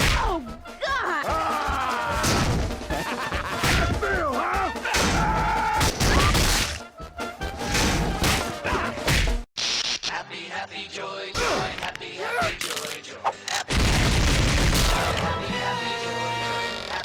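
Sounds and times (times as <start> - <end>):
music: 0.0 - 13.8, 14.6 - 17.0
crashing and whacking impacts: 7.5 - 9.4, 13.7 - 15.5.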